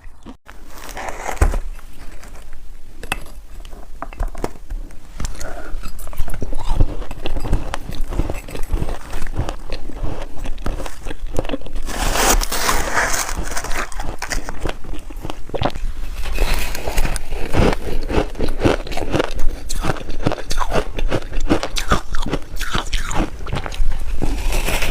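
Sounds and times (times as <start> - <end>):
ice crunched between teeth: 5.4 - 24.9.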